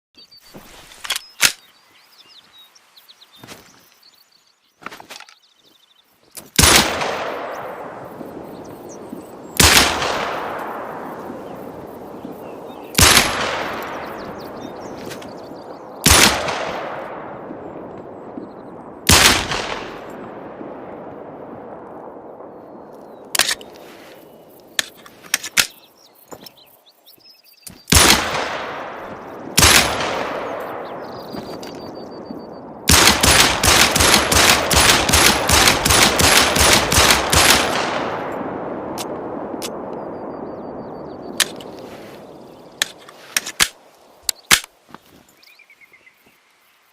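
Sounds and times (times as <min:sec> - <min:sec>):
pistol shots with echo: 0:06.6 - 0:08.2, 0:09.6 - 0:11.6, 0:12.9 - 0:14.7, 0:16.0 - 0:17.4, 0:19.1 - 0:20.6, 0:27.9 - 0:31.3, 0:32.9 - 0:39.9.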